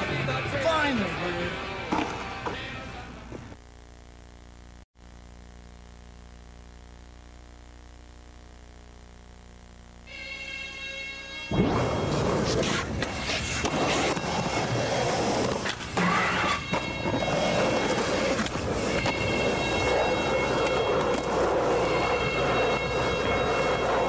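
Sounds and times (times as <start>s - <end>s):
skateboard wheels rolling on pavement: 11.5s - 24.0s
skateboard clacking on ground: 12.1s - 24.0s.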